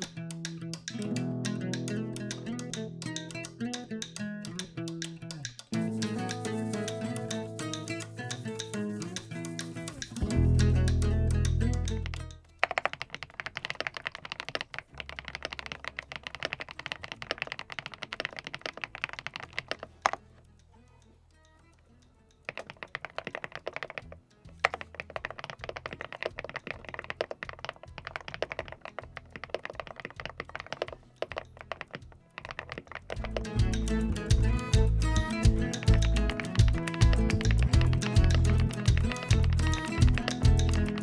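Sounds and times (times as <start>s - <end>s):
fast typing on mechanical keyboard: 11.9s - 20.2s, 22.5s - 41.0s
faint background music: 15.8s - 41.0s.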